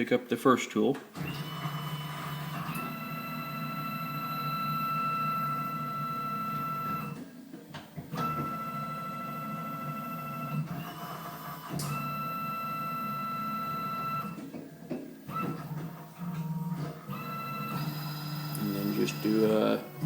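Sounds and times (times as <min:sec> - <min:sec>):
mill motors whining: 0:01.1 - 0:20.0.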